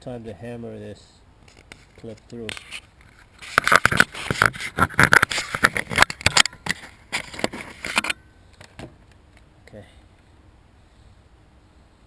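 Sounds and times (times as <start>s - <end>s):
scraping: 1.5s - 8.8s.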